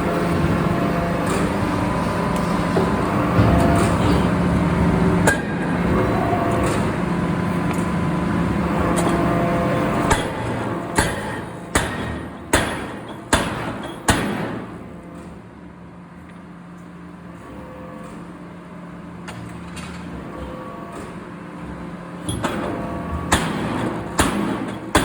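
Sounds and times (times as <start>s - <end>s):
machinery humming: 0.0s - 25.0s
forging hammer on metal: 10.1s - 14.6s, 23.3s - 25.0s.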